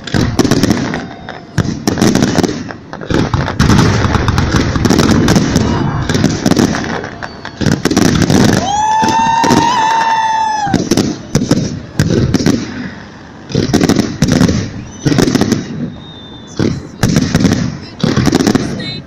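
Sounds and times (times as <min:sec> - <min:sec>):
firework bangs and crackling: 0:00.0 - 0:19.0
murmur of crowd voices: 0:05.0 - 0:09.6, 0:10.2 - 0:19.0
loud high whistle: 0:14.6 - 0:16.6.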